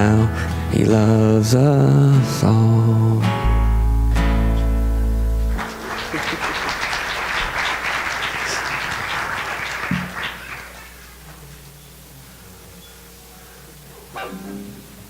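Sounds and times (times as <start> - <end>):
congregation applauding: 5.5 - 11.1.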